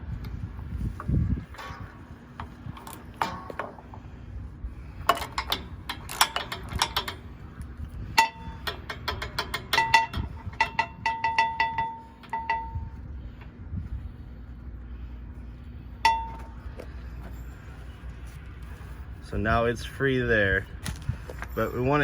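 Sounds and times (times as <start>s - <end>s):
wrench clicking on metal: 5.0s - 7.2s, 8.2s - 12.7s.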